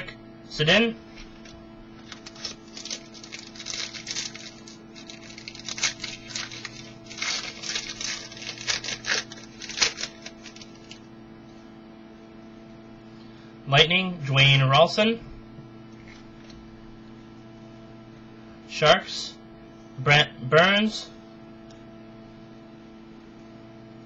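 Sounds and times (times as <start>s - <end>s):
mains hum: 0.0s - 24.0s
cards rustling and flicking: 1.2s - 11.0s.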